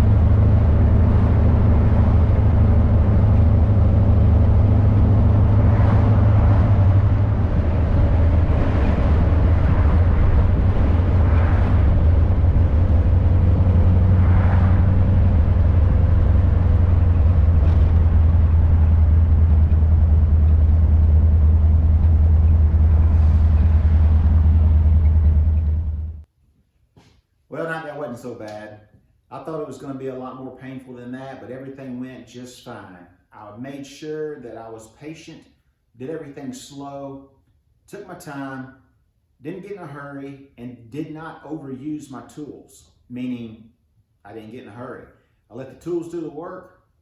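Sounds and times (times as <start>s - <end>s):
car engine low rumble: 0.0s - 26.3s.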